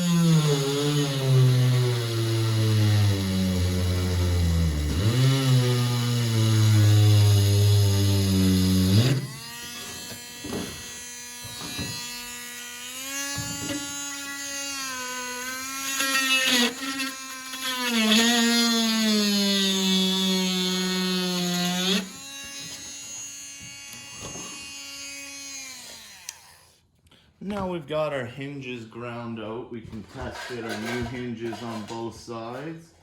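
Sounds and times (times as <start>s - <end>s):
rotary tool grinding plastic: 0.0s - 26.8s.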